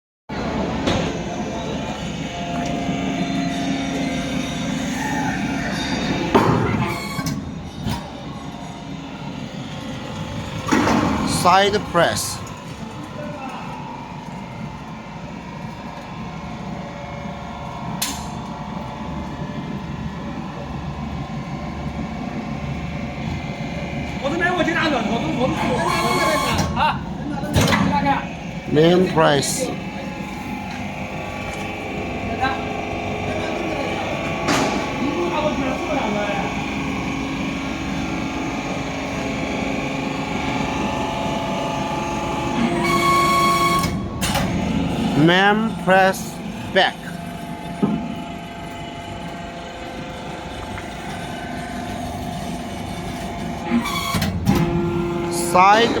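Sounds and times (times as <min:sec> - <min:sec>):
higher-pitched whine: 0:00.3 - 0:07.5
hydraulic pump motor hum: 0:00.3 - 0:56.0.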